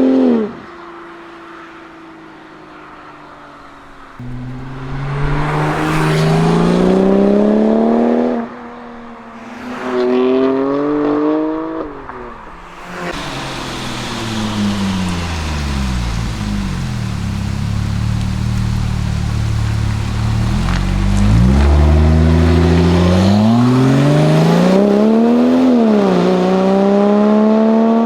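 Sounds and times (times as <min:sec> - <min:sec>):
road noise: 0:00.0 - 0:28.0
car engine accelerating hard: 0:04.2 - 0:28.0.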